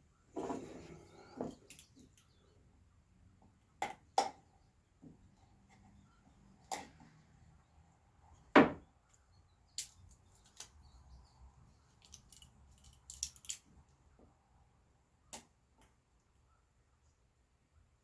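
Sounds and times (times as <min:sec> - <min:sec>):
wood and tools being set down: 0:08.6 - 0:08.8.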